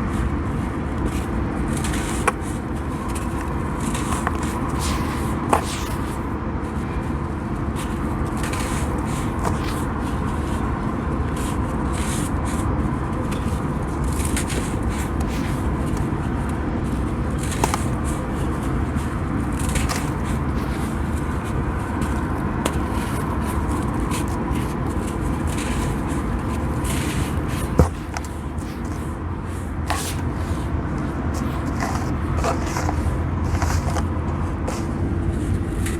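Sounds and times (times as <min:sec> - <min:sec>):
steady low hum: 0:00.0 - 0:35.9
dry sand crumbling and crushed: 0:01.7 - 0:06.4, 0:19.4 - 0:34.1.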